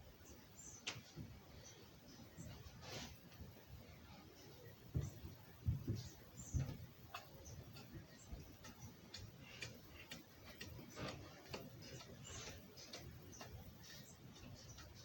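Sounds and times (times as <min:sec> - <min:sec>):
light clicking and ticking: 0:06.6 - 0:15.0.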